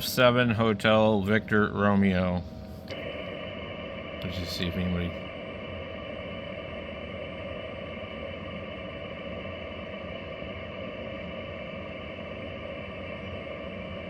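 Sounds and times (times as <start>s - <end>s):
radio receiver static: 0.0s - 5.3s.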